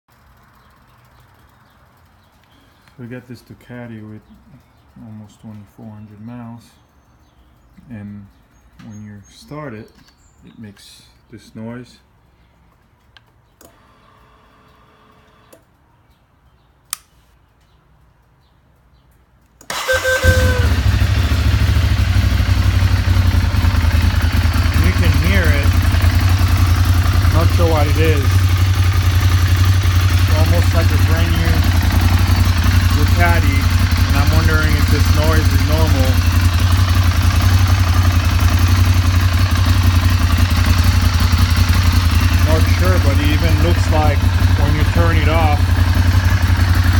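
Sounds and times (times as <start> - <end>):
motorcycle engine cranking and idling: 0.1 - 10.4, 15.5 - 46.9
click: 16.9 - 18.3, 19.1 - 19.7.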